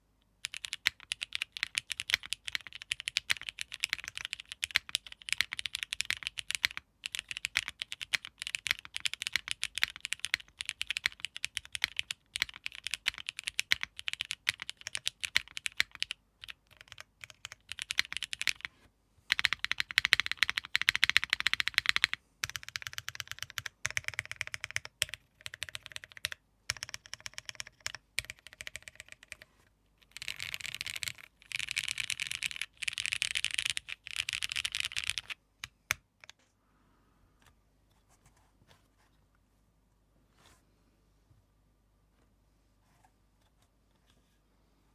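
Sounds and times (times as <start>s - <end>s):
typing on mechanical keyboard: 0.4s - 18.7s, 19.3s - 36.4s.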